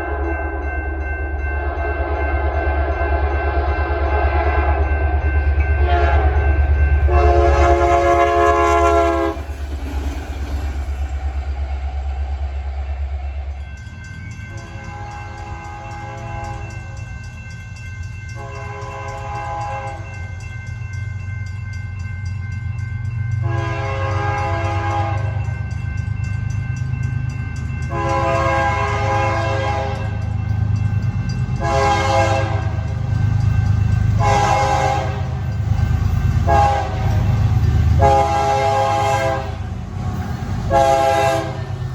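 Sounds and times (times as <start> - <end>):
locomotive engine rumble: 0.0 - 22.1
rail noise: 0.0 - 41.9
locomotive air horn: 1.6 - 4.8, 5.8 - 6.4, 7.1 - 9.5, 14.6 - 16.6, 18.4 - 20.0, 23.4 - 25.4, 27.9 - 30.1, 31.6 - 32.8, 34.2 - 35.4, 36.4 - 37.2, 38.0 - 39.7, 40.7 - 41.7.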